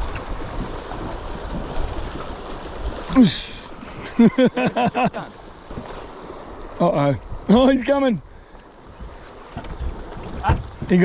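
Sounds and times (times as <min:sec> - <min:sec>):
water noise: 0:00.0 - 0:11.0
wind: 0:00.0 - 0:11.0
man exclaiming: 0:03.1 - 0:03.7.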